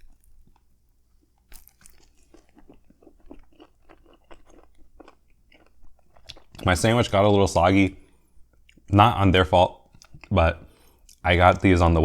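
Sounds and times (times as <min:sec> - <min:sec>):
wet chewing mouth clicks: 0:09.8 - 0:11.2.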